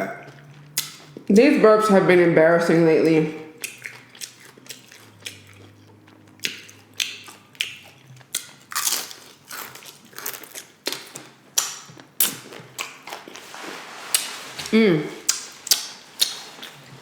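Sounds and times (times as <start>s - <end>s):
chips being crunched and chewed: 6.5s - 13.4s.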